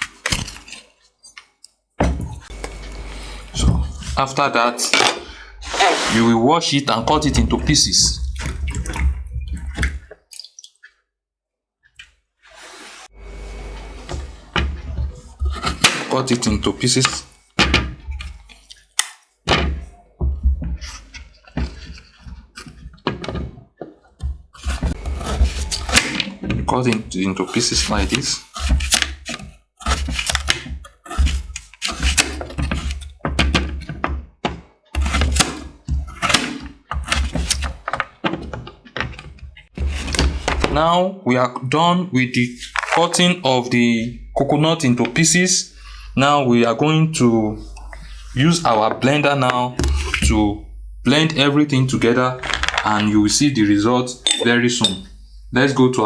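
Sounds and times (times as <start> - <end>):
knife cutting coconut flesh: 24.6 - 33.2.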